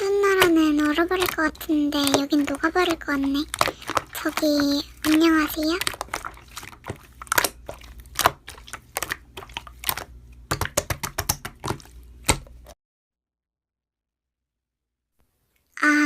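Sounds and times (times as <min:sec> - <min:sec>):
slime crackling and popping: 0:00.0 - 0:12.8.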